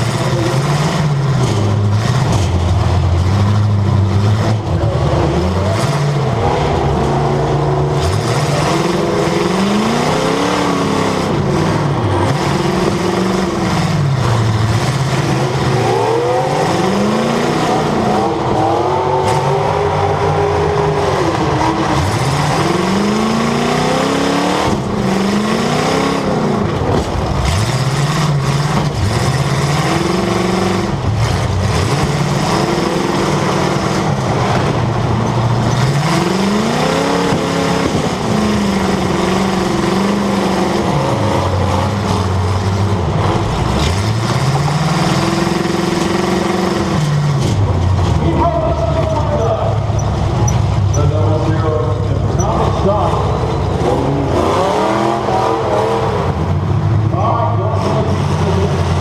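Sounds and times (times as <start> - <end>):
car engine revving: 0.0 - 59.0.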